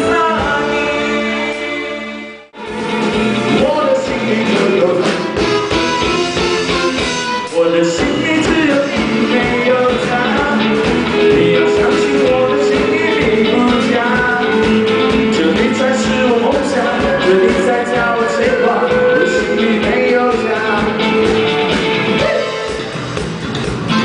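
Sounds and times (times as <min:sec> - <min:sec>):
person singing: 0:00.0 - 0:05.6, 0:07.4 - 0:22.9
live rock band playing: 0:02.6 - 0:24.0
steady drum beat: 0:08.0 - 0:24.0.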